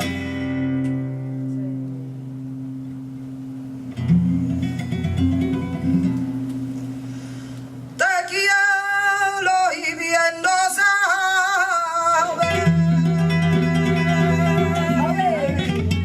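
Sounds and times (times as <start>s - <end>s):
flamenco guitar: 0.0s - 16.0s
man singing flamenco: 8.0s - 16.0s.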